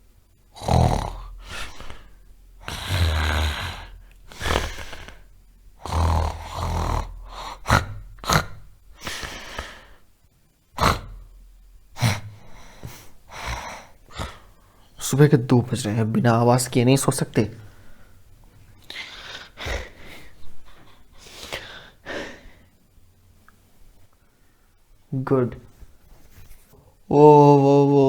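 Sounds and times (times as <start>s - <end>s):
person snoring loudly: 0.5s - 10.0s, 10.8s - 14.7s.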